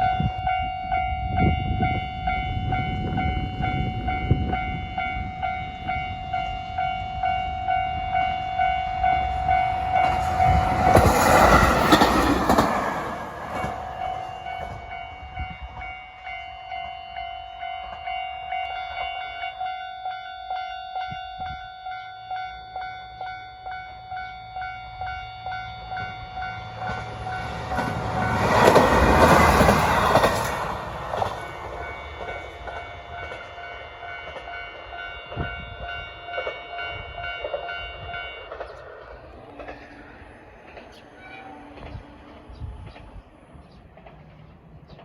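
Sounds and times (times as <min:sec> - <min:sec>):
diesel train passing: 0:00.0 - 0:45.0
level crossing bell ringing: 0:13.7 - 0:28.6.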